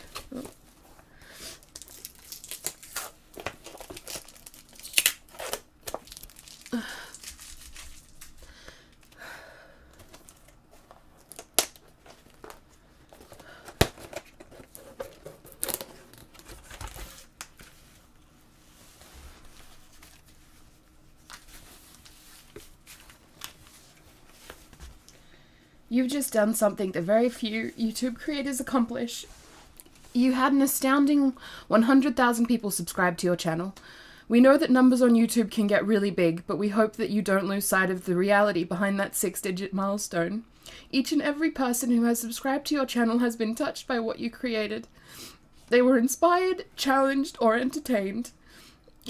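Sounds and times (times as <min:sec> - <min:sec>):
packaging tearing and crinkling: 0:01.6 - 0:08.4, 0:13.8 - 0:17.5.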